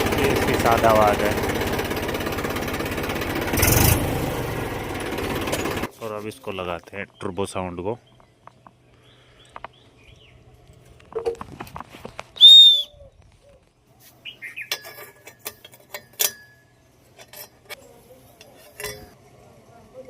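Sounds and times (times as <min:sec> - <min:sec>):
metallic clicks and knocks: 0:14.7 - 0:17.8.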